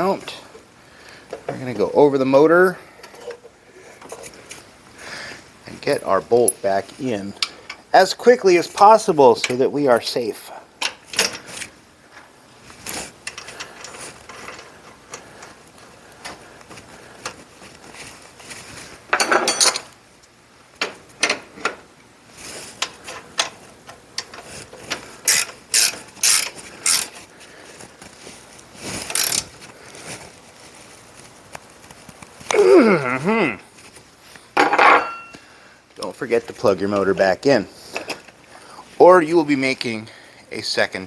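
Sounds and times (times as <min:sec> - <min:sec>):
wrench ratcheting clicks and clanks: 0:25.2 - 0:27.2, 0:29.0 - 0:29.5.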